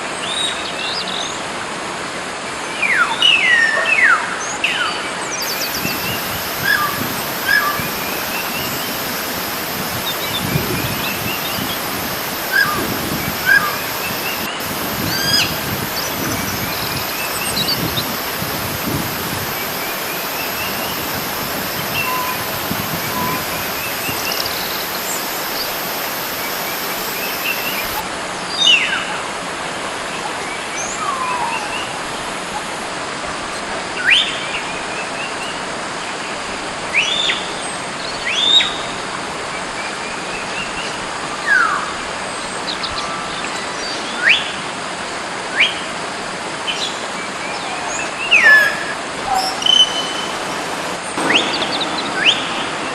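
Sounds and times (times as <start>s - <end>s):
steady hiss: 5.4s - 28.0s, 48.5s - 52.9s.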